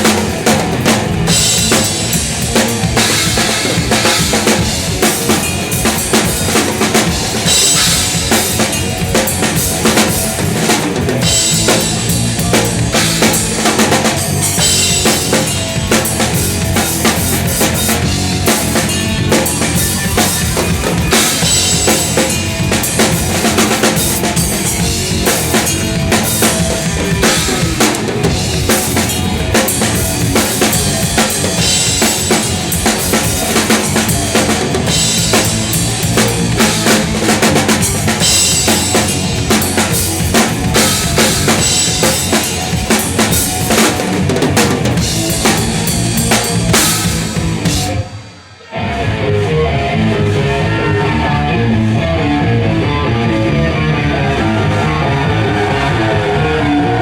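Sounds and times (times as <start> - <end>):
fast drumming: 0.0 - 48.3
metal band playing: 0.0 - 57.0.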